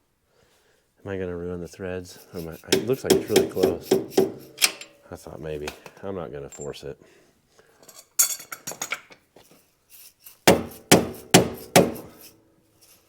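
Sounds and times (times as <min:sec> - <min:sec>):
hammer blows on metal: 0:02.6 - 0:04.9, 0:10.5 - 0:12.3
metal clattering: 0:02.7 - 0:05.1.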